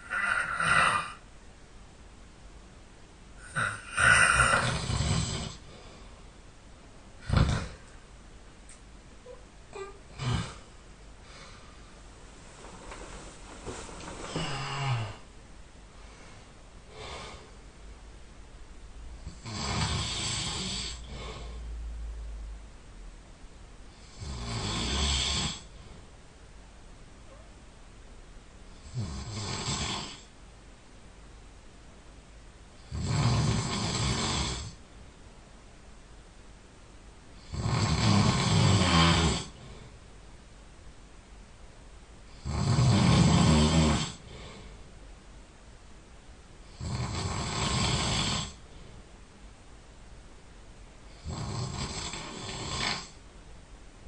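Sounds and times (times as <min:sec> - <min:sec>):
person snoring loudly: 0:00.0 - 0:01.2, 0:03.4 - 0:05.6, 0:09.8 - 0:10.7, 0:14.3 - 0:15.2, 0:19.3 - 0:21.2, 0:24.0 - 0:25.7, 0:28.8 - 0:30.3, 0:32.8 - 0:34.8, 0:37.4 - 0:39.6, 0:42.4 - 0:44.3, 0:46.7 - 0:48.6, 0:51.1 - 0:53.2
quiet breathing: 0:03.4 - 0:06.5, 0:09.2 - 0:18.1, 0:19.2 - 0:21.9, 0:38.6 - 0:40.1, 0:44.1 - 0:45.0, 0:47.8 - 0:49.2.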